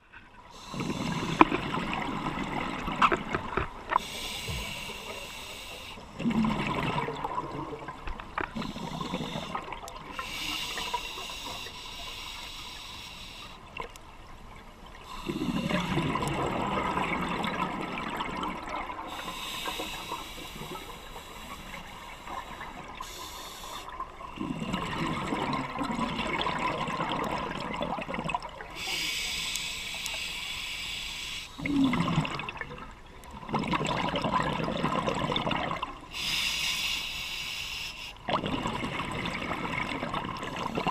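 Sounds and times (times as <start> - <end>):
regulator hissing inhale: 0.5 - 1.6, 4.0 - 6.1, 8.6 - 13.7, 15.0 - 16.0, 19.1 - 24.0, 28.7 - 31.7, 36.1 - 38.2
bubbling exhale: 0.5 - 2.9, 8.5 - 13.3, 15.1 - 32.6.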